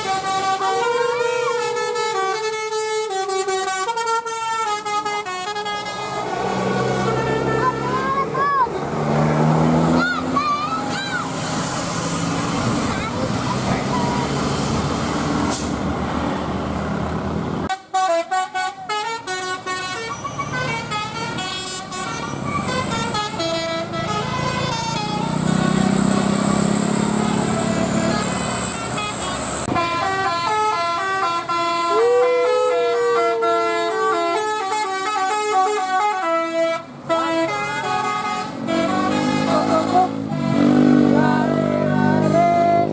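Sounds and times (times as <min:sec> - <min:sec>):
bus musical horn playing tune: 0:00.0 - 0:08.6, 0:17.7 - 0:42.9
engine noise: 0:00.0 - 0:42.9
traffic noise: 0:00.0 - 0:42.9.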